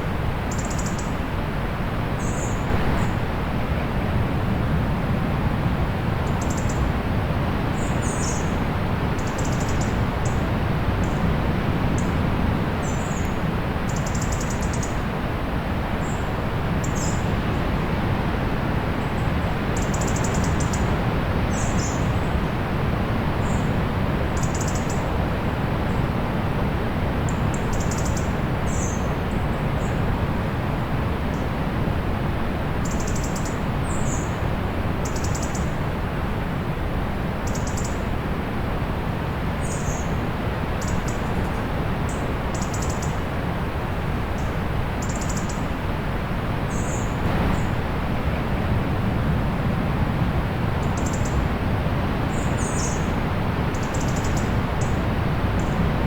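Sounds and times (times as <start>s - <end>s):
distant sea rushing: 1.2s - 19.8s, 25.1s - 56.0s
small birds chirping: 46.7s - 47.8s, 52.3s - 55.8s.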